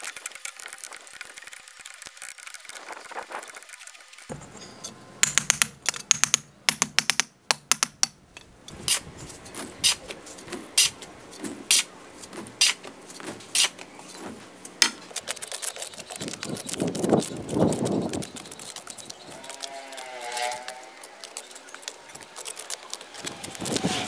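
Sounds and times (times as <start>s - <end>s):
hard objects clicking and knocking: 4.3s - 19.8s.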